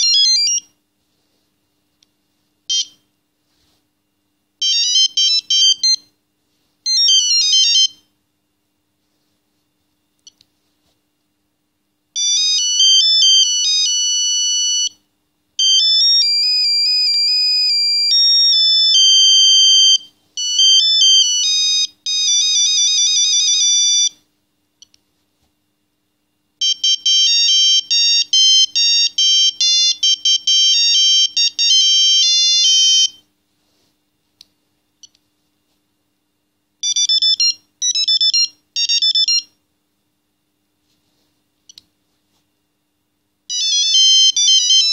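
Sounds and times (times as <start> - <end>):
phone ringtone melodies: 0.0 - 0.6, 4.6 - 6.0, 6.9 - 8.0, 15.6 - 24.1, 26.6 - 33.2, 36.8 - 39.5, 43.5 - 44.9.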